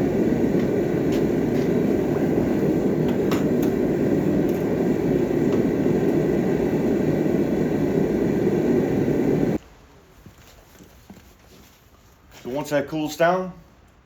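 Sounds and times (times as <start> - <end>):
forge burner rushing: 0.0 - 9.6.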